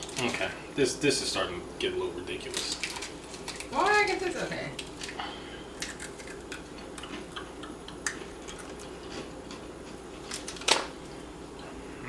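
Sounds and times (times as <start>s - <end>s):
crunchy cookie chewing: 4.8s - 10.6s.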